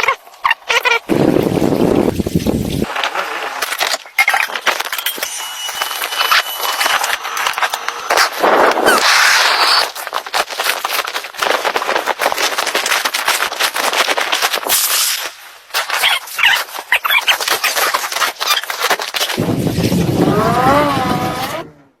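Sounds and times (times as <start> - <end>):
firewood crackling and popping: 1.1 - 20.8
wavering pitched sound: 4.3 - 10.2, 19.4 - 21.9.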